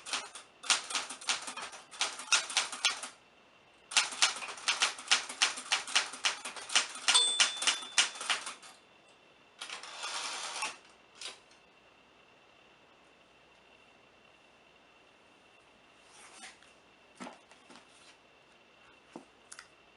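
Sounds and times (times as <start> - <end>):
typewriter keys clacking: 3.9 - 8.6
typewriter carriage return: 3.9 - 8.7
typewriter bell ring: 7.0 - 8.6.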